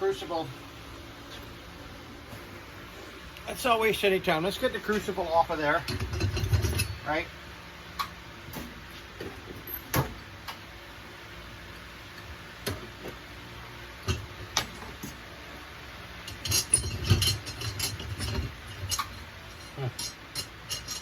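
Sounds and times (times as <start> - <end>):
steady low hum: 0.0 - 21.0
metal clattering: 5.6 - 7.1, 16.2 - 21.0
metal knocks and clinks: 5.8 - 7.0, 16.2 - 21.0.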